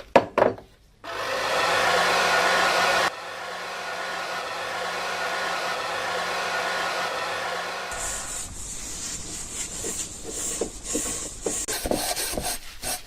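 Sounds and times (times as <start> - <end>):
electric blower rushing air: 1.1 - 8.8.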